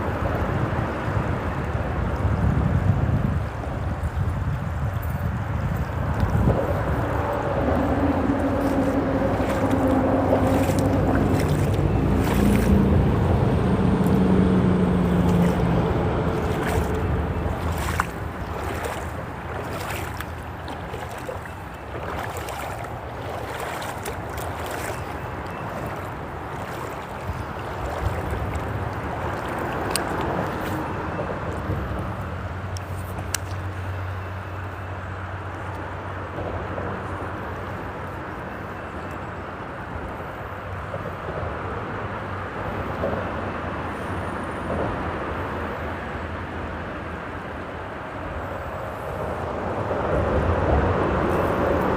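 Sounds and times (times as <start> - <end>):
freeway traffic droning overhead: 0.0 - 51.9
stream water rushing: 5.4 - 36.4, 45.0 - 51.9
passing vehicle hum: 5.8 - 38.1, 41.4 - 51.9.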